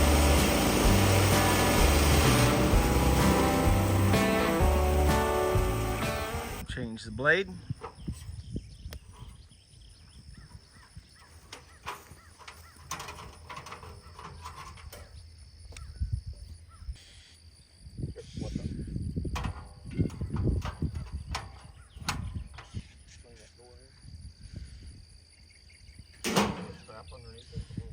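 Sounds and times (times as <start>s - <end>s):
tools and metal parts knocking: 11.5s - 15.1s.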